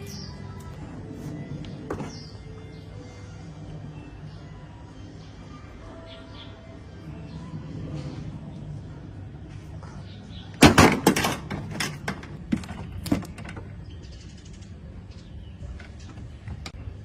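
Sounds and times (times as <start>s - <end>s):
hard knocks and clatters: 10.6s - 13.7s.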